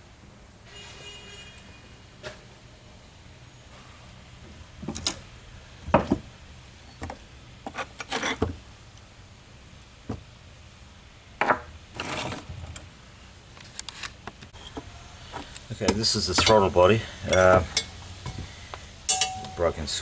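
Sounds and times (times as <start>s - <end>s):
metal parts knocking and clunking: 13.6s - 20.0s.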